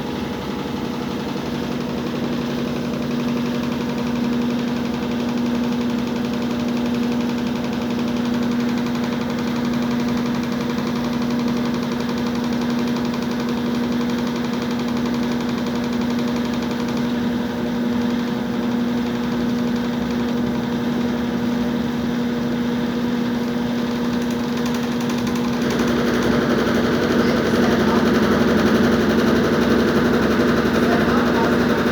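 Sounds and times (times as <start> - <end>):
washing machine spinning: 0.0 - 31.9
abnormal mechanical noise: 23.9 - 31.9.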